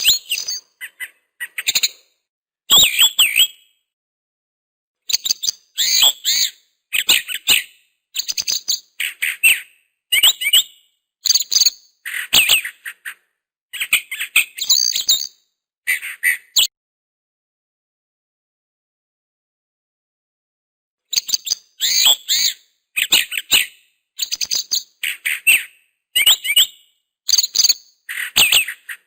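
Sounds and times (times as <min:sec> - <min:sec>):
bird chirping: 0:00.0 - 0:03.8, 0:05.1 - 0:16.7, 0:21.1 - 0:29.0.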